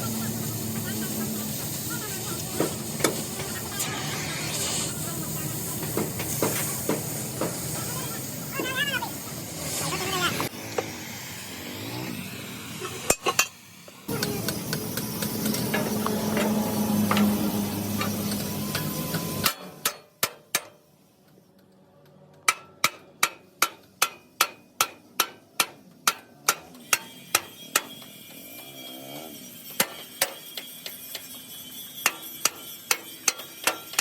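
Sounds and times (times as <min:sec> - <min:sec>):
hammer striking metal: 0:14.1 - 0:20.8, 0:22.4 - 0:28.1, 0:29.7 - 0:31.4, 0:32.0 - 0:34.0.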